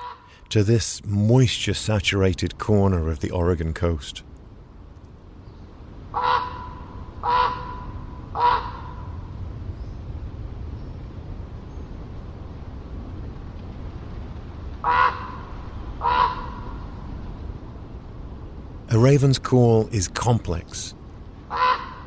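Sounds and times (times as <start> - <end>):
raven calling: 0.0 - 0.5, 6.1 - 9.2, 14.8 - 17.1, 18.9 - 22.0
steady low rumble: 0.3 - 22.0.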